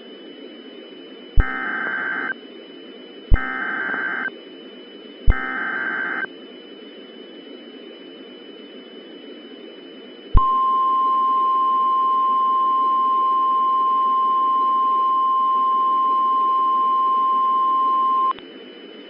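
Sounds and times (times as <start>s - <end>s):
static hiss: 0.0s - 10.4s
faint high whine: 0.0s - 19.0s
steady alarm tone: 0.6s - 4.3s, 5.2s - 6.3s.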